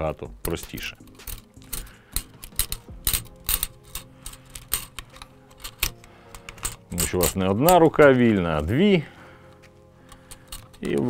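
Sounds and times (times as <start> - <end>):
metal parts clicking and knocking: 0.4 - 8.1, 9.5 - 11.0.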